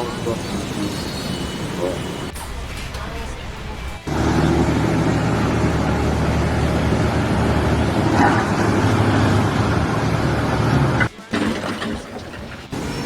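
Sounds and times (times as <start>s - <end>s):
engine running steadily: 4.1s - 11.1s.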